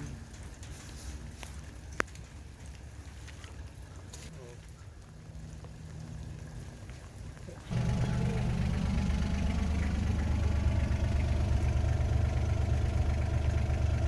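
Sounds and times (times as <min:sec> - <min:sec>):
heavy equipment engine running: 0:07.7 - 0:14.0.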